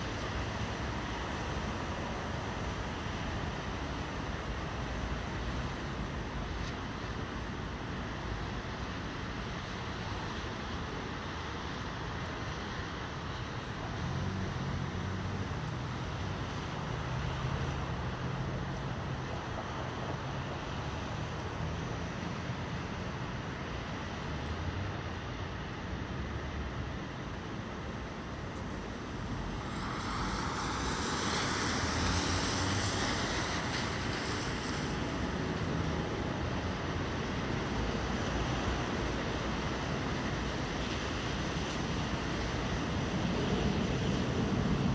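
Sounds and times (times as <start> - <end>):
city traffic: 0.0 - 44.9
blizzard wind gusting: 27.0 - 37.7.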